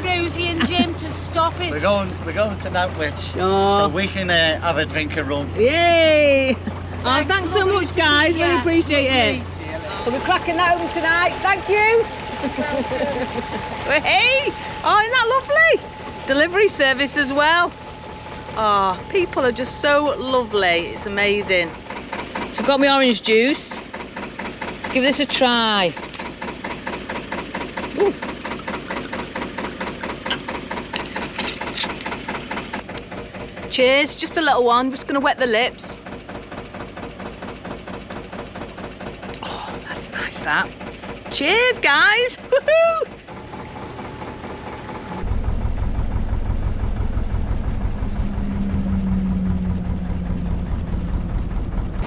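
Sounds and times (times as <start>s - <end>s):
steady hum: 0.0s - 26.0s, 42.9s - 52.0s
diesel engine idling: 0.0s - 52.0s.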